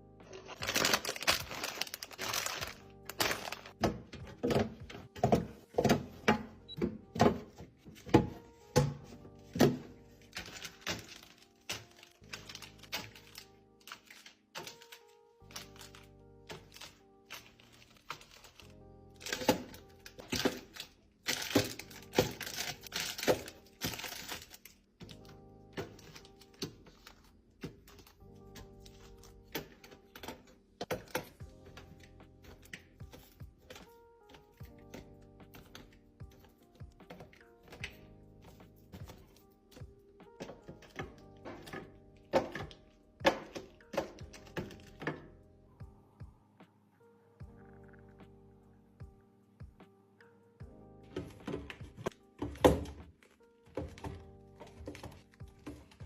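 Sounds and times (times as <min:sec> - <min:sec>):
soft background music: 0:00.0 - 0:56.0
chocolate wrappers crinkling: 0:00.3 - 0:03.8, 0:10.1 - 0:30.3
packs clacking set down: 0:00.3 - 0:06.3, 0:07.2 - 0:45.2.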